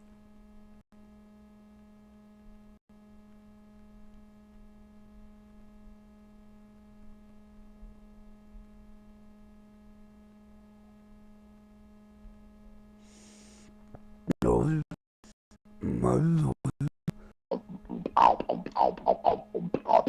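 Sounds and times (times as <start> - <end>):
faint electrical hum: 0.0 - 14.8.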